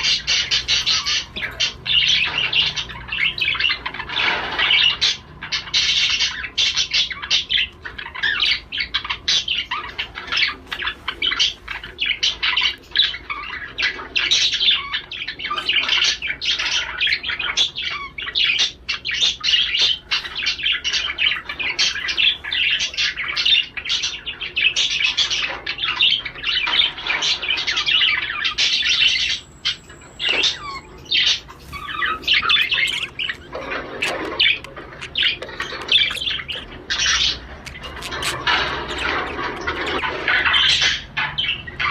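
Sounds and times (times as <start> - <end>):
budgerigar warbling chatter: 0.0 - 41.9.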